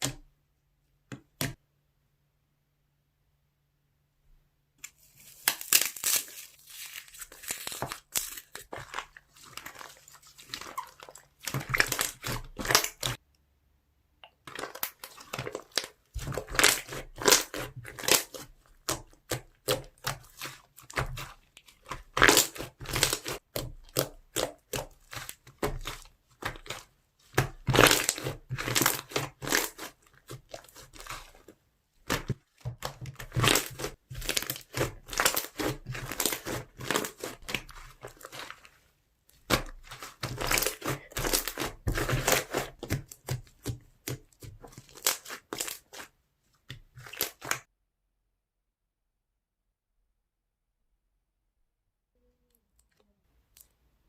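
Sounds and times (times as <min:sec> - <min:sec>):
slime crackling and popping: 0:05.3 - 0:13.2, 0:14.4 - 0:38.7, 0:39.3 - 0:46.1, 0:46.8 - 0:47.7.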